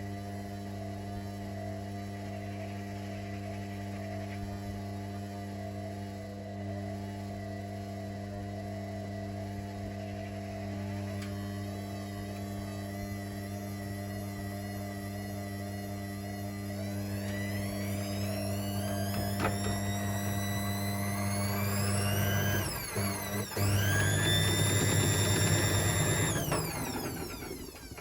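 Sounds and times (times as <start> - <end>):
washing machine drum motor whining: 6.5 - 28.0.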